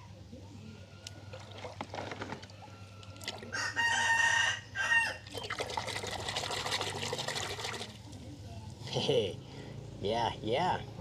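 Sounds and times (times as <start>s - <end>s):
rooster crowing: 2.7s - 5.3s.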